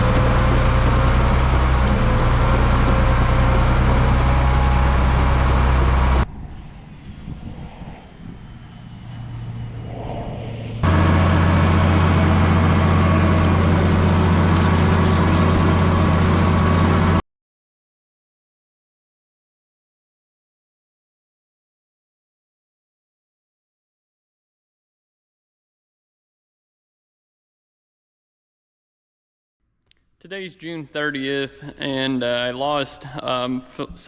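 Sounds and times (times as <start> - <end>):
heavy machinery engine running: 0.0 - 6.3, 10.8 - 17.2.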